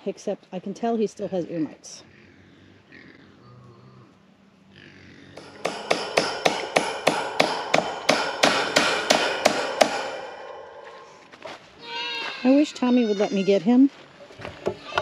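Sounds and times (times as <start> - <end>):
hammer strikes ringing: 5.4 - 11.6.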